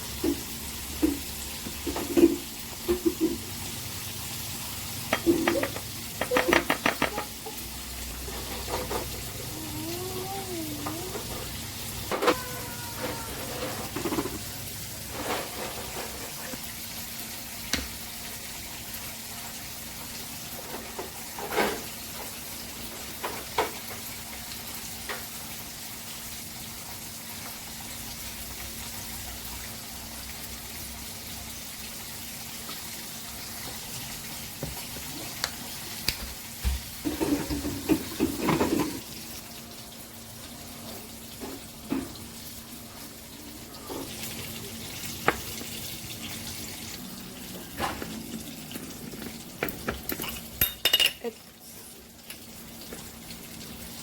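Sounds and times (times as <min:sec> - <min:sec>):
kitchen clatter: 0:00.1 - 0:03.5, 0:05.0 - 0:09.4, 0:10.9 - 0:16.7, 0:20.5 - 0:24.1, 0:36.2 - 0:39.2, 0:47.6 - 0:51.5
kitchen clinks and knocks: 0:05.2 - 0:07.4, 0:49.6 - 0:51.4.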